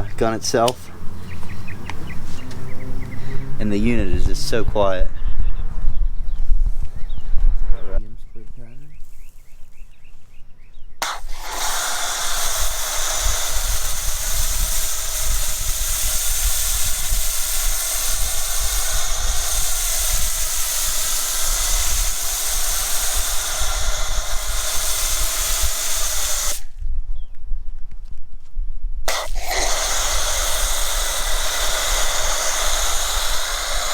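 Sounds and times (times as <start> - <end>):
pressure washer spraying foam: 11.0 - 26.7, 29.1 - 33.9.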